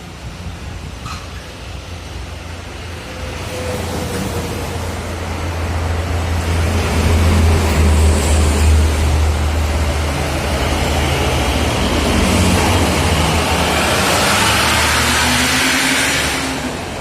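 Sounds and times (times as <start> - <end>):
bus engine rumbling: 0.0 - 17.0
road and tyre noise: 0.0 - 17.0.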